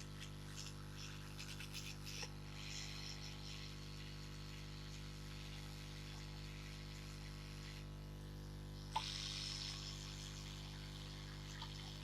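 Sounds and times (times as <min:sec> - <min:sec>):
steady electrical hum: 0:00.0 - 0:12.0
hot air blower hissing: 0:08.8 - 0:12.0.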